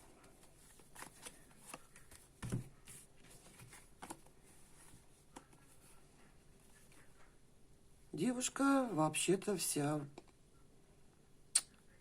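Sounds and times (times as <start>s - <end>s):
cards tapping and sliding: 0.3s - 4.3s.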